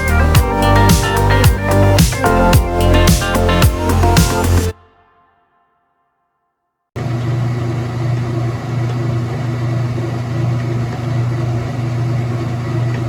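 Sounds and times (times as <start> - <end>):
washing machine running: 7.0 - 13.0.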